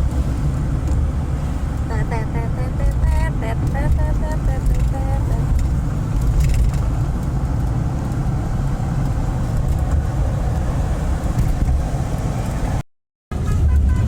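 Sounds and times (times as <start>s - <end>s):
vehicle engine and road rumble: 0.0s - 14.0s.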